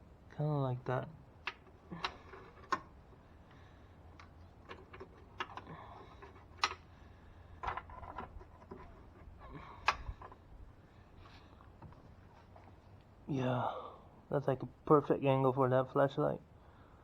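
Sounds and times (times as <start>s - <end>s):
faint low hum: 0.0s - 17.0s
tools and parts clicking: 1.4s - 3.2s, 4.1s - 7.0s.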